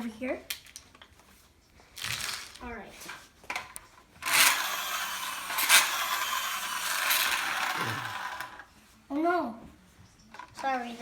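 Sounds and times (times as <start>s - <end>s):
toy vehicle rolling on floor: 2.0s - 8.7s.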